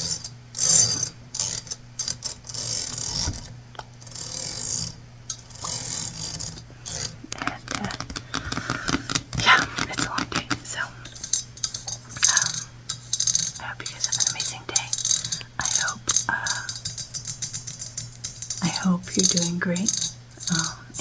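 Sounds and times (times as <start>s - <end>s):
scratching and rubbing small objects: 0.0s - 21.0s
clicks and taps: 7.3s - 12.3s.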